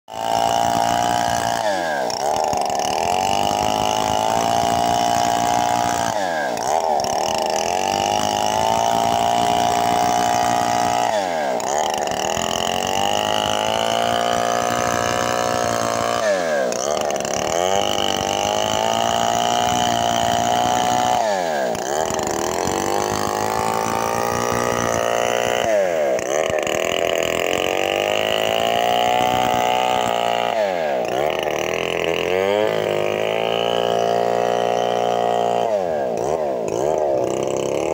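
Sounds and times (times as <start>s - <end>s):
chainsaw cutting wood: 0.0s - 37.9s.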